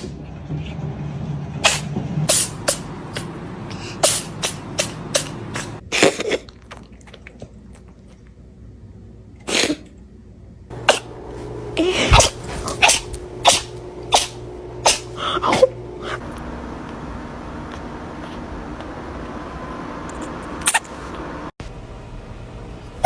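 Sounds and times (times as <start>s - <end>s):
cat sneezing: 1.6s - 6.5s, 9.4s - 9.9s, 10.7s - 16.2s, 20.2s - 21.4s.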